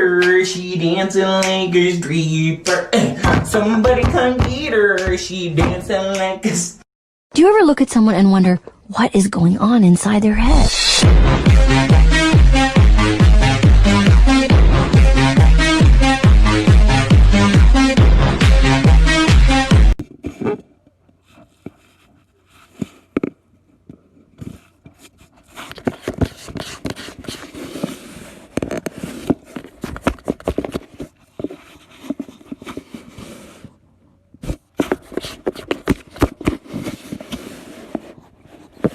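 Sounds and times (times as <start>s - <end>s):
knocks and taps: 3.2s - 5.8s.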